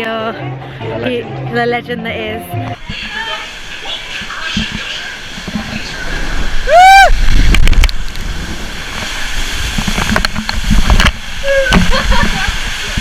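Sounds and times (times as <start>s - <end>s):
wind buffeting microphone: 4.2s - 13.0s
high whoop: 6.6s - 7.4s.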